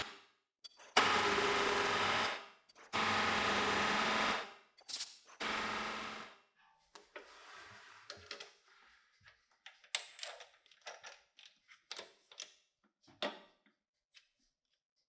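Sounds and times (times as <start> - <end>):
small parts and tools clattering: 4.8 - 5.4, 9.6 - 13.3.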